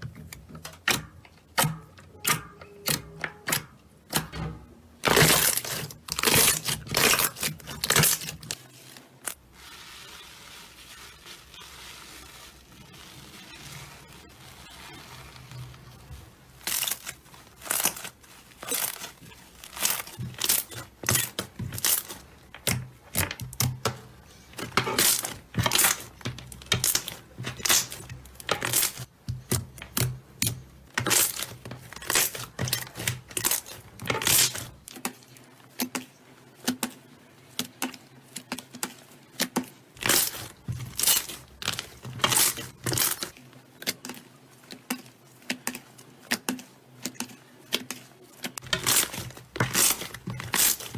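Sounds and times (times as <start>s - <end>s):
slime crackling squishes: 5.0s - 35.3s.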